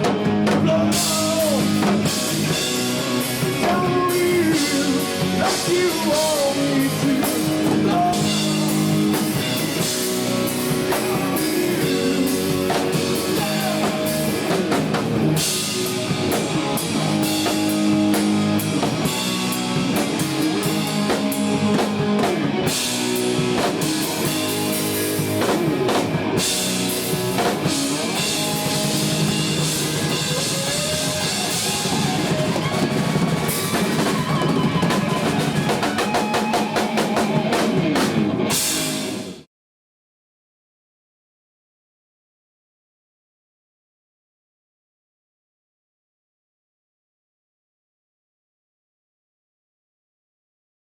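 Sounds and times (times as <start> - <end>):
electric guitar with bends: 0.0 - 39.4
driving drum kit: 0.0 - 39.5.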